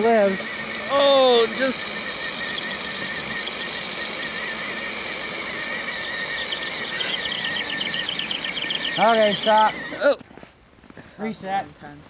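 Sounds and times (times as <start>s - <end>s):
electric motors whining under load: 0.0s - 10.2s.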